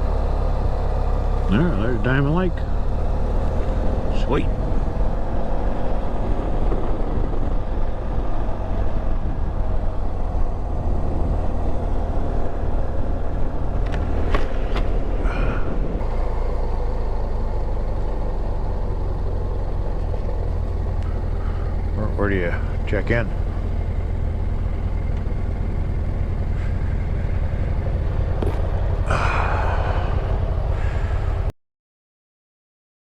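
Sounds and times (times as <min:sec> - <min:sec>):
motorcycle engine running: 0:00.0 - 0:31.5
wind rumble on microphone: 0:04.5 - 0:16.1.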